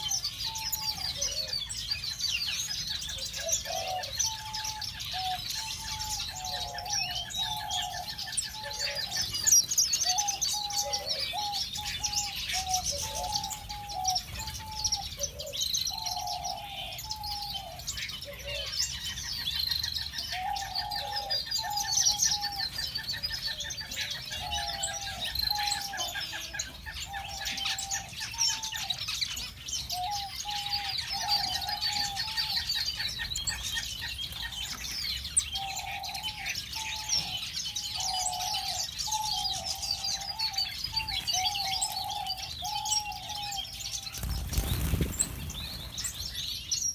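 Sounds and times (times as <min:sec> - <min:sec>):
finches chattering: 0:00.0 - 0:46.9
fast bird trill: 0:30.2 - 0:46.9.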